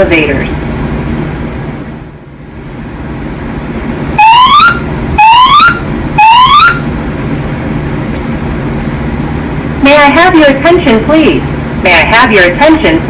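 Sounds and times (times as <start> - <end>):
steady low hum: 0.0 - 13.0
rising whoop alarm sweeps: 4.2 - 6.8.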